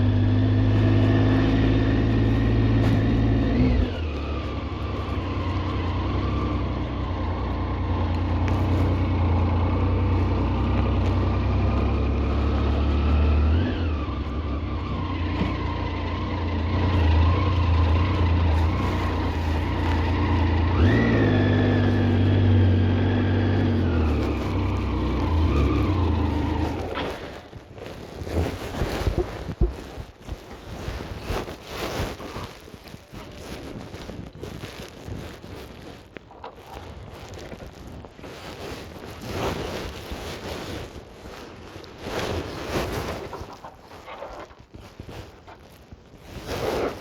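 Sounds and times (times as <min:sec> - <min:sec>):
vehicle engine hum: 0:00.0 - 0:46.3.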